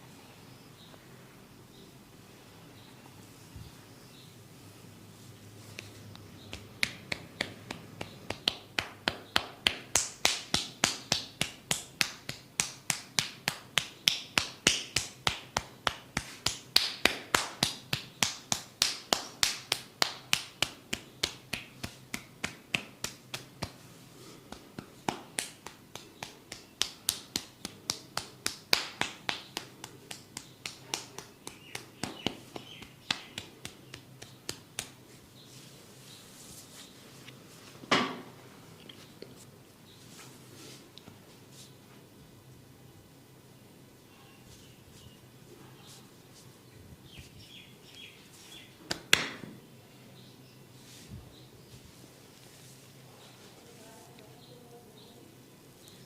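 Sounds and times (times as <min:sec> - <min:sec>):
percussive massage tapping: 0:06.5 - 0:23.8, 0:24.5 - 0:35.1, 0:48.8 - 0:49.6.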